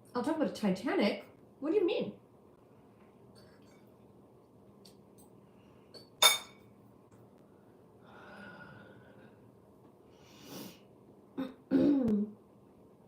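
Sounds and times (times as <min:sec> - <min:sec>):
soft breath-like sound: 0:07.5 - 0:10.9.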